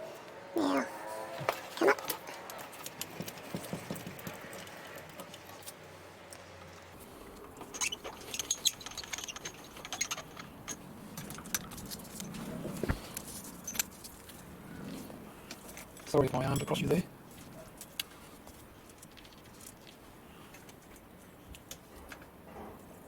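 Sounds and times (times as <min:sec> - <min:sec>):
metallic clicks and rattles: 0:07.2 - 0:14.5.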